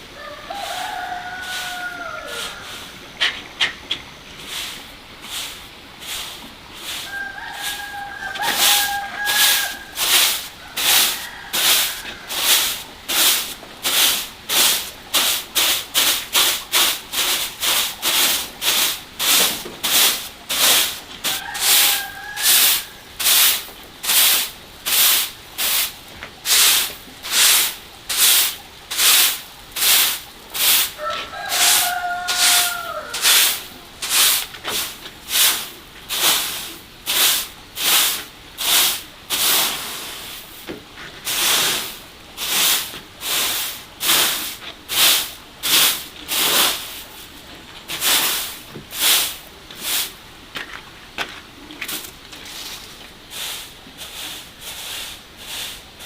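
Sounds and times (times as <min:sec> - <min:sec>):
rasping scraping strokes: 0:04.4 - 0:14.8, 0:26.5 - 0:35.6.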